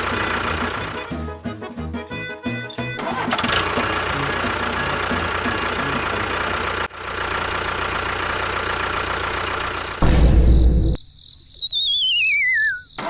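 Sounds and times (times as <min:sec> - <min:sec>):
small engine idling: 0:00.0 - 0:01.1, 0:02.8 - 0:10.0
short high beeps: 0:07.1 - 0:10.0.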